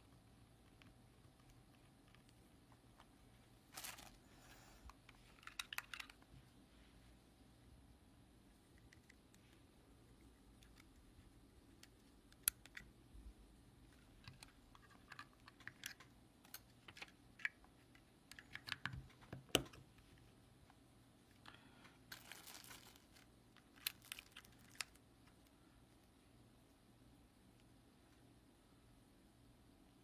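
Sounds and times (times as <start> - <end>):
crinkling rustle: 0.8 - 6.5, 21.3 - 25.5
small objects clicking and tapping: 4.9 - 6.4.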